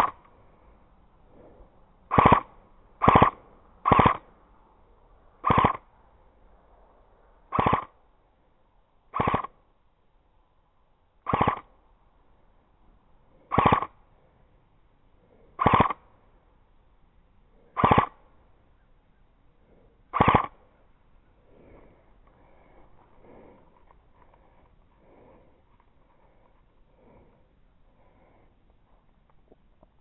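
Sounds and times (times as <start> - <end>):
airsoft gun bursts: 2.1 - 4.2, 5.4 - 5.8, 7.5 - 7.9, 9.1 - 9.5, 11.3 - 11.7, 13.5 - 13.9, 15.6 - 16.0, 17.8 - 18.2, 20.1 - 20.6.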